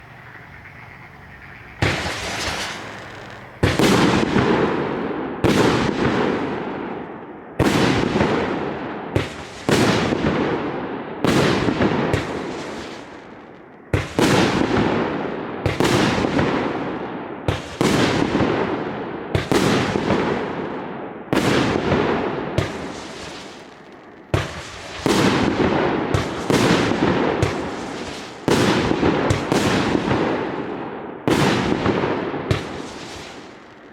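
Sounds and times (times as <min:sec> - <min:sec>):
fireworks bangs: 0:00.0 - 0:33.9.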